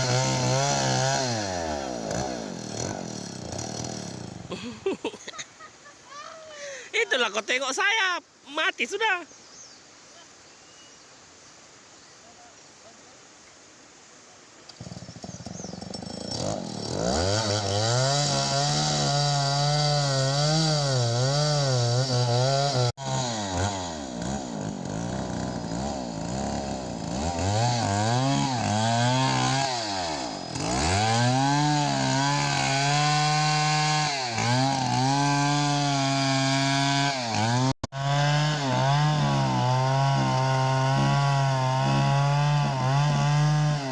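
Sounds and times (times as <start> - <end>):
chainsaw revving: 0.0 - 4.8, 14.7 - 43.9.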